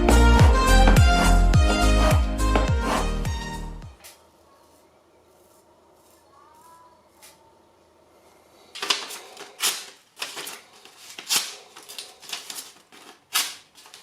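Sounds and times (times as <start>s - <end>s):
plane blade honing strokes: 0.1s - 3.7s.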